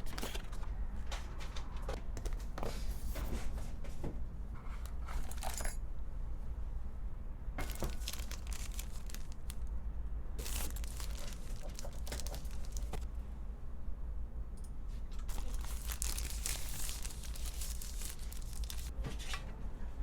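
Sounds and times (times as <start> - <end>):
packaging crinkling and tearing: 7.6 - 9.7, 10.4 - 13.0, 15.3 - 18.9.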